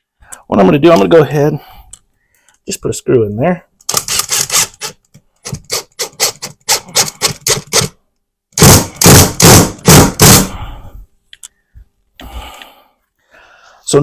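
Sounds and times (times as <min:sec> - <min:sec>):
screw driven into drywall: 0:03.9 - 0:08.0.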